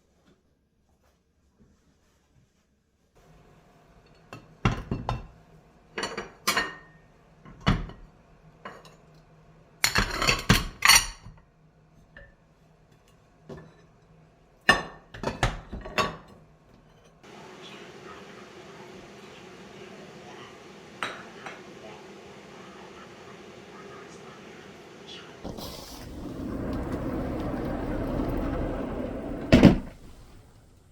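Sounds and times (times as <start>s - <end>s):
steady hiss: 17.3s - 30.9s.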